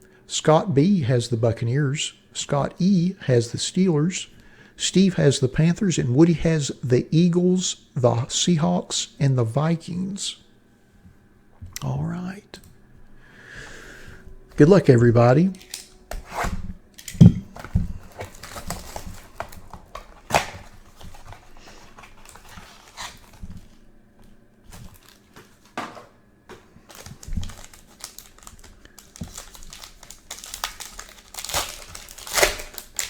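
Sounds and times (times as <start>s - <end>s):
plastic wrapping crinkling: 14.6s - 33.0s.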